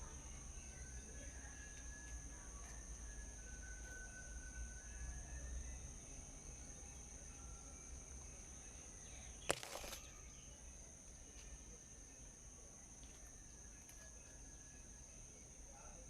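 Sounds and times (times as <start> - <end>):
faint bird chirps: 0.0 - 16.0
brief rustle: 9.4 - 10.2.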